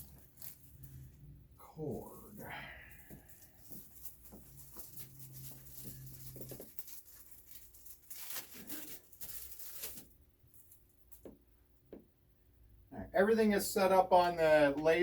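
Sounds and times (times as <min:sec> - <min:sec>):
hands handling small parts: 0:02.9 - 0:11.4.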